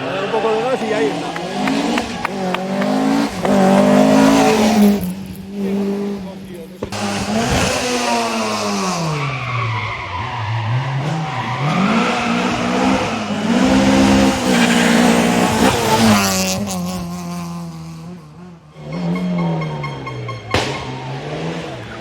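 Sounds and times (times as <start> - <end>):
tyres sliding: 0.0 - 5.1
rally car engine revving: 0.0 - 22.0.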